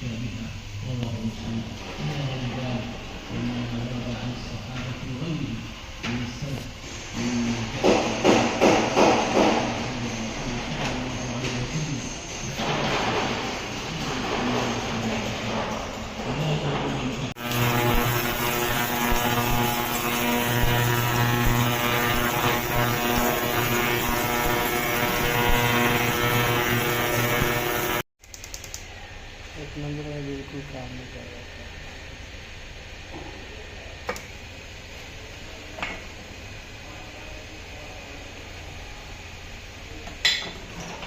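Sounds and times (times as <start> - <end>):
car engine drone: 9.3 - 28.1.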